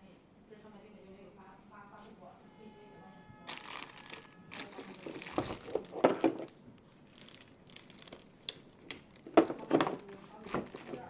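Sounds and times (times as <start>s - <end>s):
crinkling and rustling: 3.4s - 11.0s.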